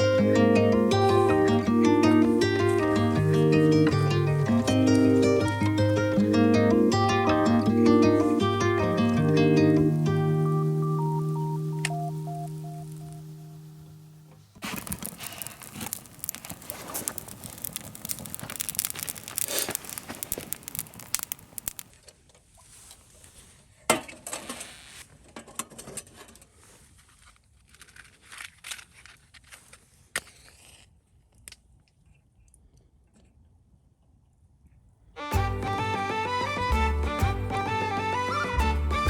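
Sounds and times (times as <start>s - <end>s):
crinkling and rustling handling noise: 14.2s - 32.3s.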